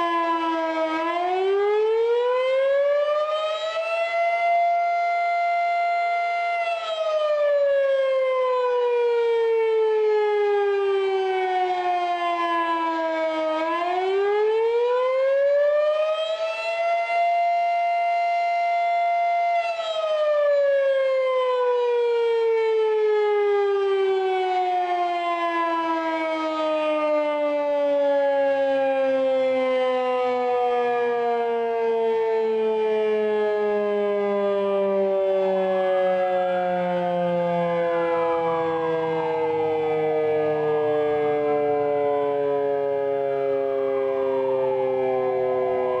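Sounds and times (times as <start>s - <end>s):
mechanical warning siren: 0.0s - 46.0s.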